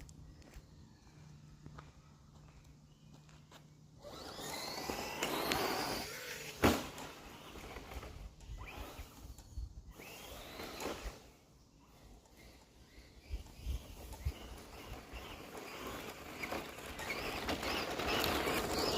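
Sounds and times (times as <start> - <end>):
rc truck motor whining: 3.7 - 18.9
rc truck landing thud: 4.3 - 8.1.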